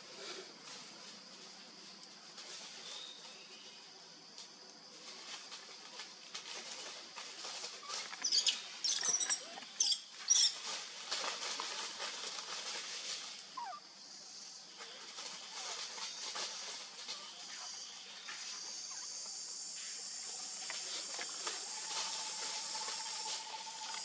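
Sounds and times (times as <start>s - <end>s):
insects hissing: 0.0s - 24.0s
baby monkey squealing: 8.2s - 10.5s.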